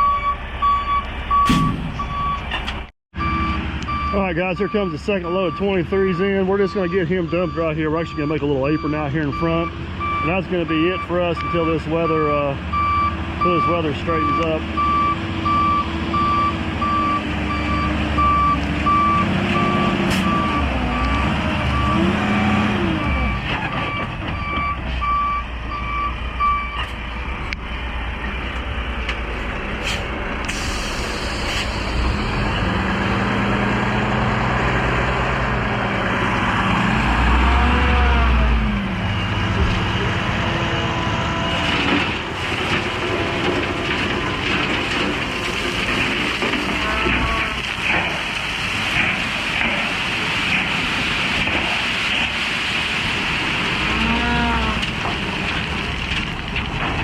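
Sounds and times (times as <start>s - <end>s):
truck reversing alarm beeping: 0.0s - 27.9s, 38.2s - 41.6s
diesel engine running and revving: 0.0s - 57.0s.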